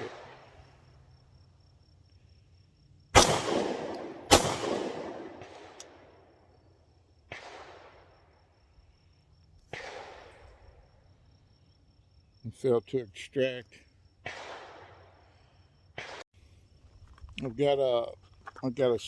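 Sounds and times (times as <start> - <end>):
faint bangs with echo: 3.2 - 6.1, 7.3 - 8.1, 9.7 - 10.5, 14.2 - 15.1, 16.0 - 16.2
pistol shots with echo: 3.2 - 6.2, 7.3 - 8.2, 9.7 - 10.4, 14.2 - 15.1.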